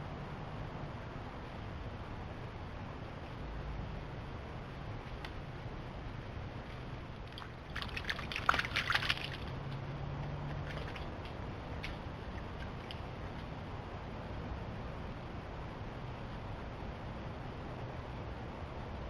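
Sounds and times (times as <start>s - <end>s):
steady low hum: 0.0s - 19.0s
splashes in shallow water: 7.3s - 9.6s, 10.6s - 13.1s.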